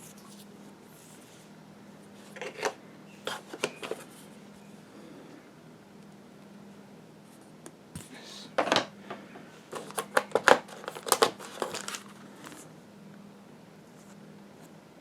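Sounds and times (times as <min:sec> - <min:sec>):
cardboard and plastic rustling: 0:02.3 - 0:04.3, 0:09.7 - 0:12.7.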